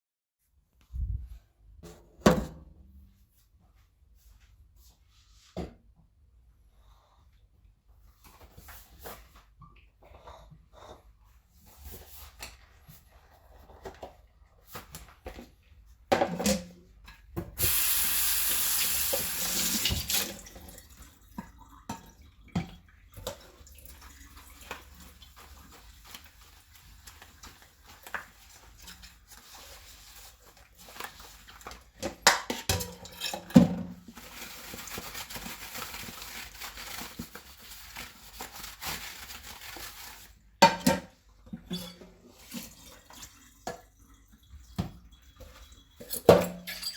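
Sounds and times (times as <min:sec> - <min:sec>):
dishes clinking in a sink: 0:32.2 - 0:34.0, 0:40.6 - 0:43.9, 0:44.5 - 0:46.9.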